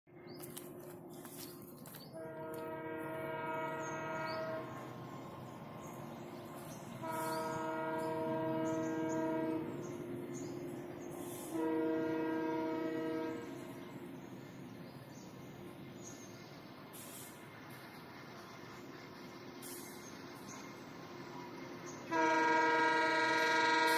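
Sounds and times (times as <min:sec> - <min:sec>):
diesel locomotive horn blasts: 0:02.1 - 0:05.7, 0:06.6 - 0:10.4, 0:11.2 - 0:13.9, 0:22.0 - 0:23.9.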